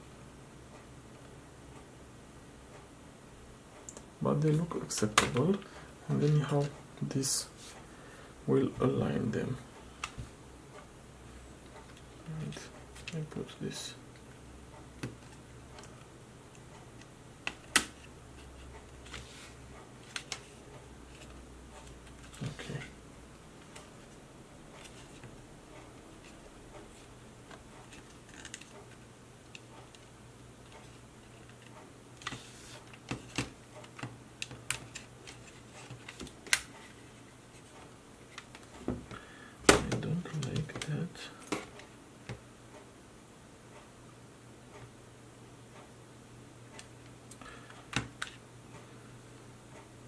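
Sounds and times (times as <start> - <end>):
faint hum: 0.0 - 50.0
small parts clicking and tapping: 27.0 - 37.0.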